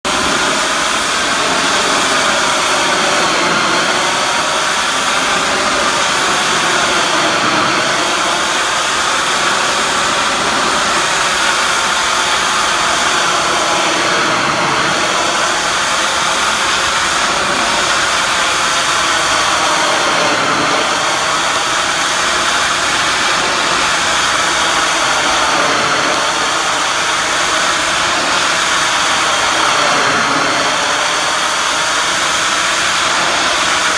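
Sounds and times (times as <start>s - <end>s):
pressure washer spraying: 0.1s - 33.9s.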